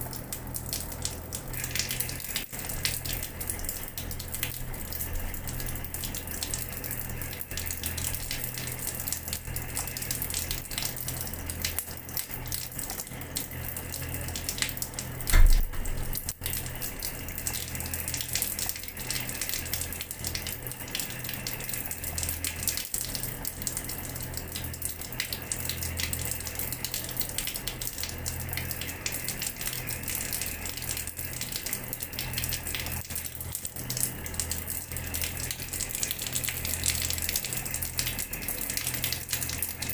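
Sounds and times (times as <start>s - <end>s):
tap water splashing onto floor: 9.8s - 20.6s
short low thump: 15.3s - 16.0s.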